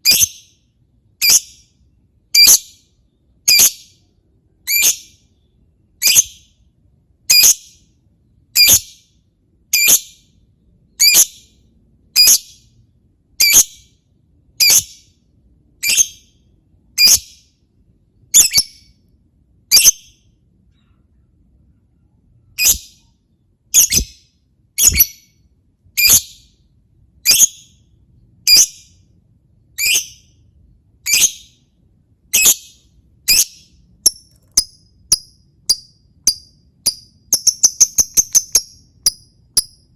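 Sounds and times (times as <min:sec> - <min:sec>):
lovebird shrill calls: 0:00.1 - 0:00.5, 0:22.6 - 0:22.9, 0:23.8 - 0:24.2, 0:24.8 - 0:25.2, 0:29.8 - 0:30.2, 0:31.1 - 0:31.5, 0:33.3 - 0:39.8.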